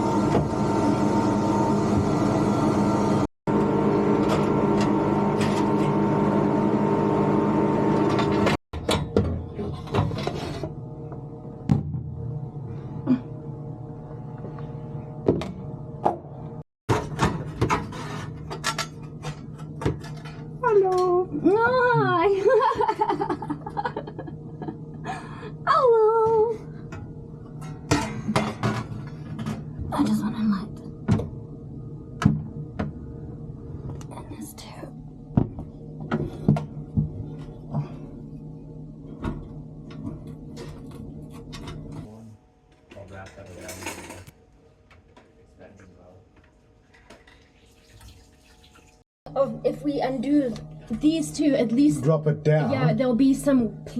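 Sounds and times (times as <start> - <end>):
steady hum: 9.9 - 42.3.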